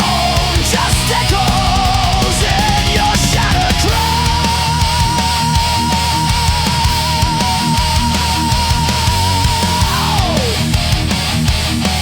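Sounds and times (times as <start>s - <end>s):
heavy metal band with drums: 0.0s - 12.0s.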